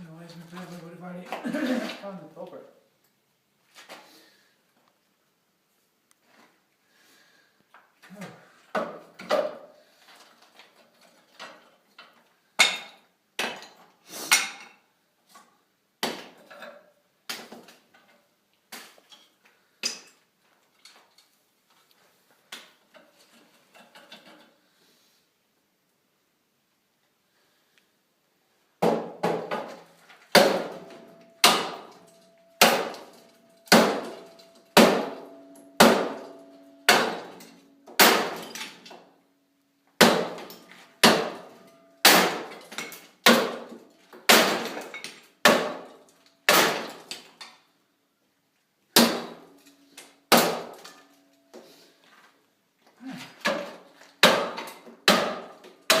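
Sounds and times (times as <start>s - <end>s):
ringing hammer blows: 30.6s - 38.6s.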